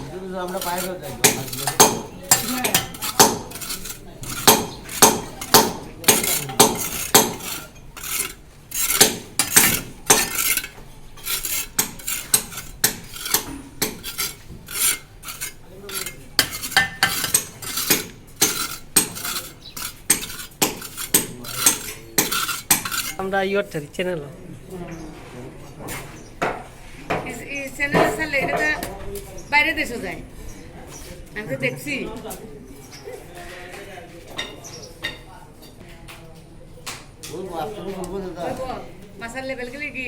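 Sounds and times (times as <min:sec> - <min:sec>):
trowel scraping mortar: 0:00.4 - 0:23.3.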